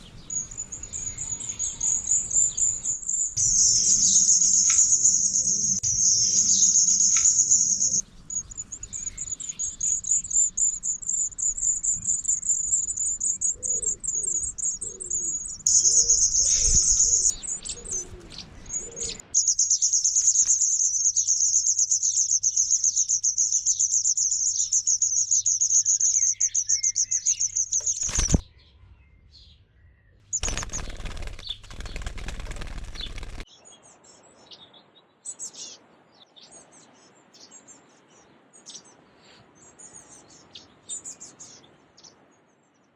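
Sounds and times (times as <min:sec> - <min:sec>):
nestlings begging cheeping: 0:00.0 - 0:28.4, 0:30.3 - 0:33.4.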